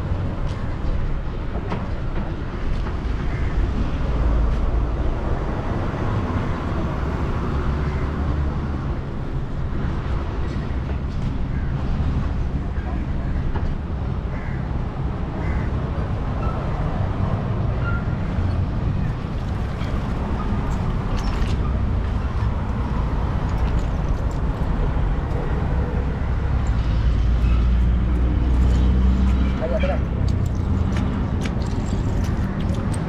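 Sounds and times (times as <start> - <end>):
wind: 0.0 - 33.0
boat engine rumbling: 18.4 - 33.0
water noise: 19.0 - 27.4.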